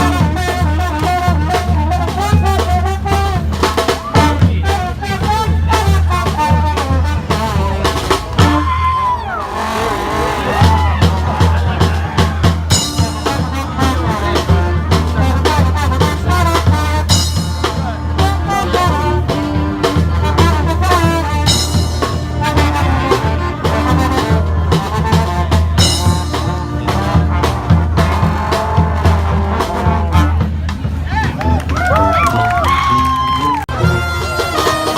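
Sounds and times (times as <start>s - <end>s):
brass band horns: 0.0s - 34.9s
drum beat: 0.0s - 34.9s
low bass line: 9.4s - 34.6s.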